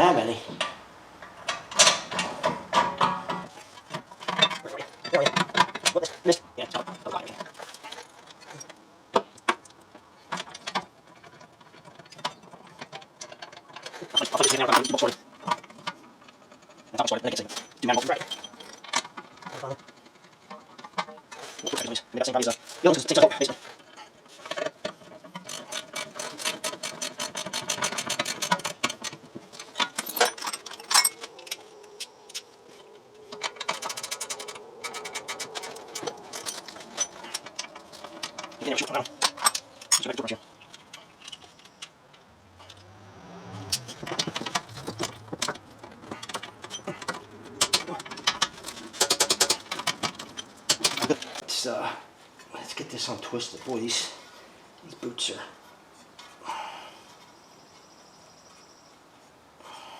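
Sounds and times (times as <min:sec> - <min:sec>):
hand tools clicking on metal: 0:17.4 - 0:51.4.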